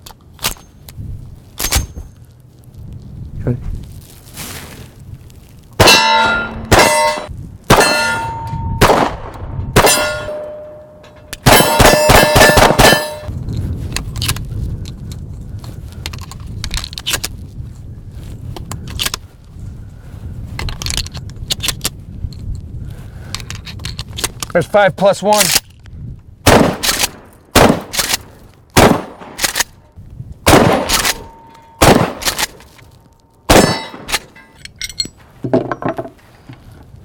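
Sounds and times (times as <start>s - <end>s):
steel targets ringing from gunfire: 5.8s - 9.1s, 9.8s - 13.3s, 33.5s - 34.6s.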